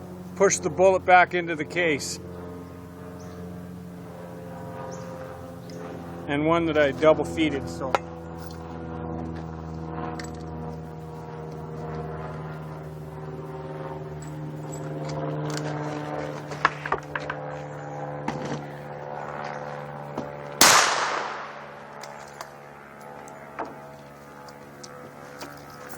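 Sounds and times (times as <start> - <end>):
rifle shot: 20.6 - 21.9.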